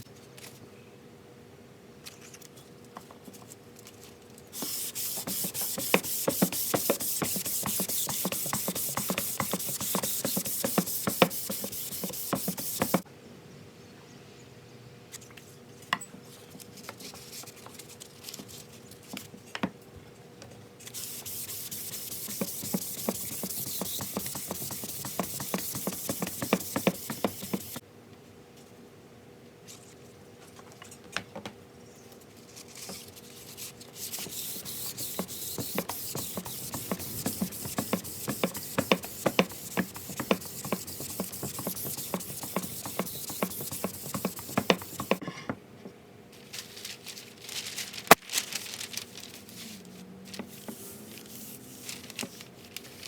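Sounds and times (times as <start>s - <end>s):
sanding wood: 4.6s - 13.0s, 21.0s - 27.8s, 34.0s - 45.2s.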